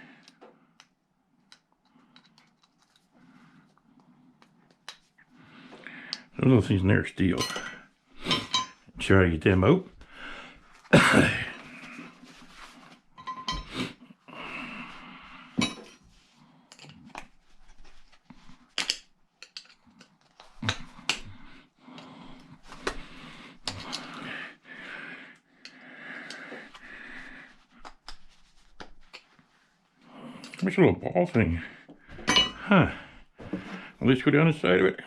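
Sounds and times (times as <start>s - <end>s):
metal parts and tools clinking: 7.4s - 8.8s, 13.2s - 13.7s, 18.8s - 20.1s, 32.2s - 32.6s.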